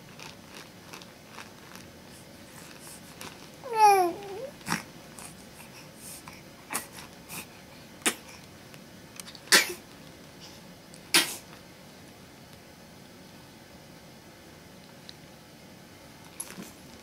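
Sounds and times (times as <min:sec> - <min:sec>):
small sharp sneezes: 0:09.5 - 0:09.8, 0:11.1 - 0:11.5.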